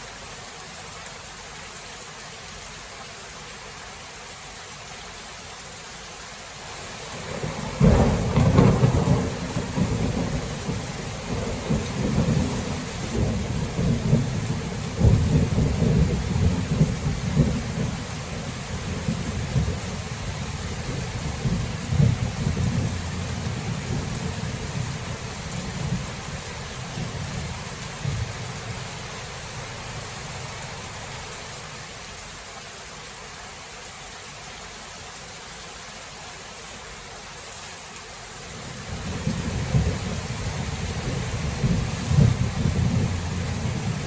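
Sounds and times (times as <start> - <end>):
steady rain: 0.0 - 44.0
rolling thunder: 7.1 - 28.8, 38.9 - 44.0.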